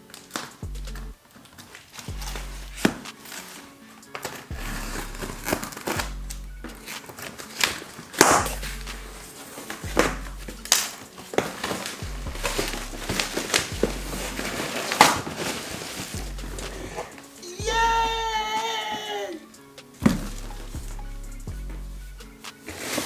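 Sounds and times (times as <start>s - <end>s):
plastic packaging crinkling: 0.0s - 17.6s, 21.8s - 23.0s
background music with bass line: 0.6s - 1.2s, 2.1s - 3.1s, 4.5s - 7.0s, 8.2s - 11.0s, 11.8s - 15.0s, 16.0s - 23.0s.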